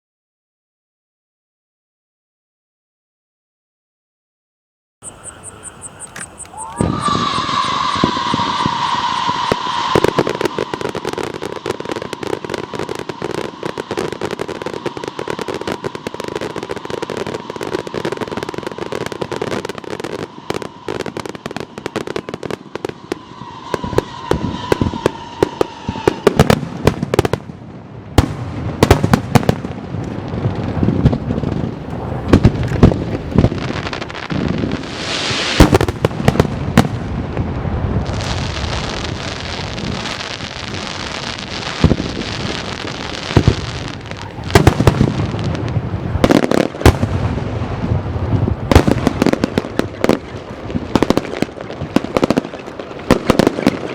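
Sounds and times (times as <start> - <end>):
firework shells bursting: 5.0 - 27.1, 28.8 - 36.8
fireworks crackling: 5.0 - 53.9.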